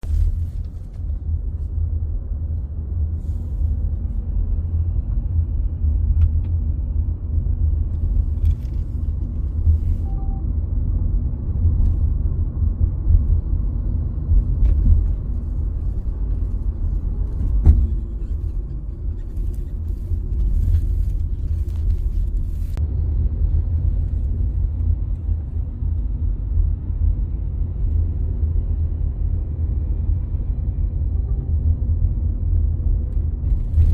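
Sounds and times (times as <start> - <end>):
car road and engine rumble: 0.0 - 33.9
faint short beep: 10.0 - 10.5.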